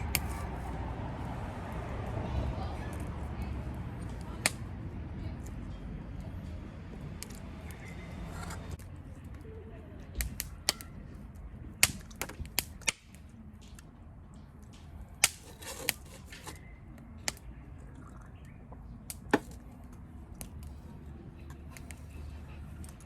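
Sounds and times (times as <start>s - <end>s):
objects clicking and knocking: 19.1s - 20.7s.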